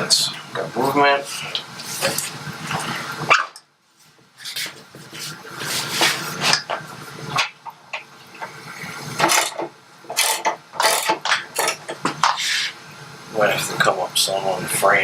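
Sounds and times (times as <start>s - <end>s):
metal parts scraping and knocking: 9.2s - 12.0s.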